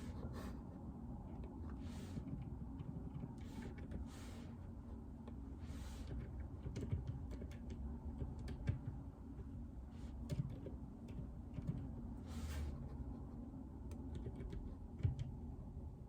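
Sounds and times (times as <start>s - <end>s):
soft mechanical keyboard typing: 2.2s - 4.0s, 6.1s - 9.5s, 10.3s - 12.0s, 13.9s - 15.5s.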